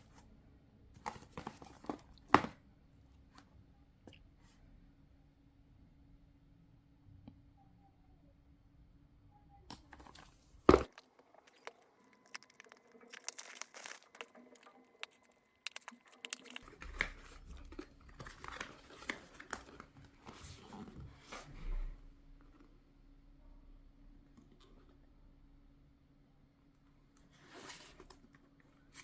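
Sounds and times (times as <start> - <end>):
plastic wrap and cardboard crinkling: 10.8 - 20.9.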